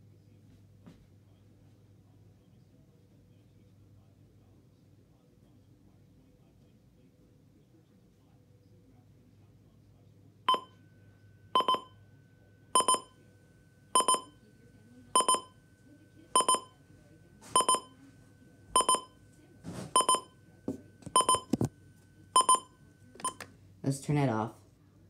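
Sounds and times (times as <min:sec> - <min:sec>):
weather radio alarm beeping: 0:12.7 - 0:13.1, 0:14.0 - 0:14.3, 0:16.3 - 0:16.8, 0:17.4 - 0:18.0.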